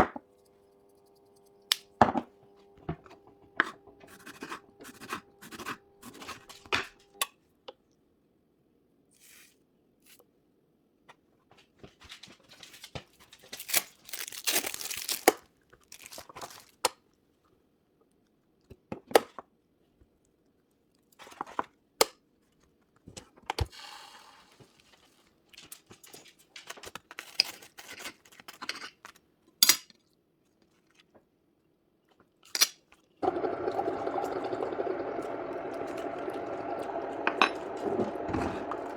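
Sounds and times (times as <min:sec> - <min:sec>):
crinkling: 0:12.0 - 0:16.9
bread tearing by hand: 0:13.5 - 0:16.8.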